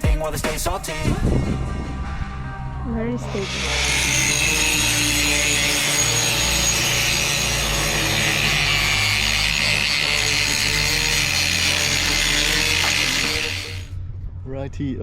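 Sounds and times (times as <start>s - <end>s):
power grinder grinding steel: 3.4s - 13.9s.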